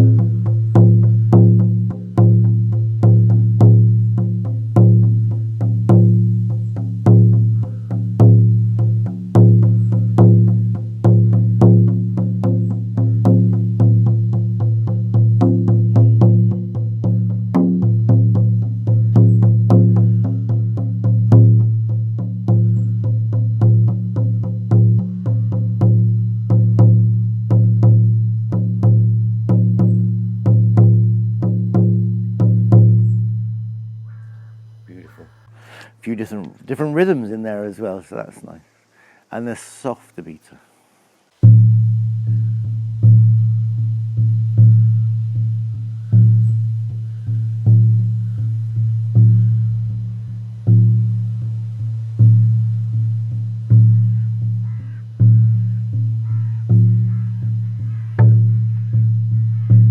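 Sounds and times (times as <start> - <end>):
frame drum beats ringing: 41.4 - 54.6.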